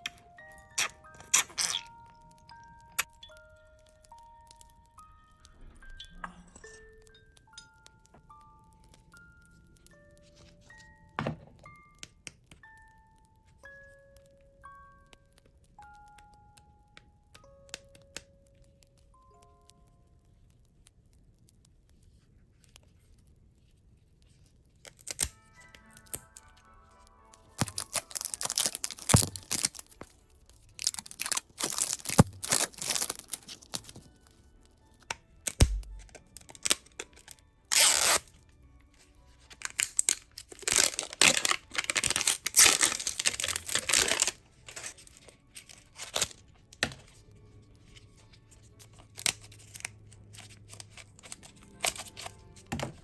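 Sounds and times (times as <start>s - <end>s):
packaging being torn and crinkled: 0.0s - 5.1s, 24.5s - 53.0s
chime-like tones: 0.1s - 12.0s.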